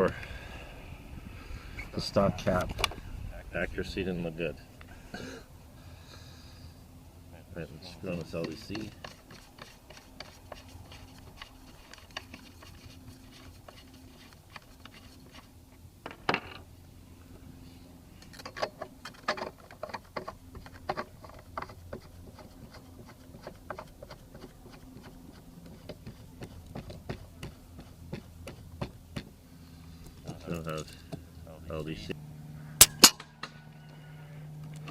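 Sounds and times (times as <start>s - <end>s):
small clicks taps and scrapes: 8.1s - 15.5s, 18.2s - 29.3s.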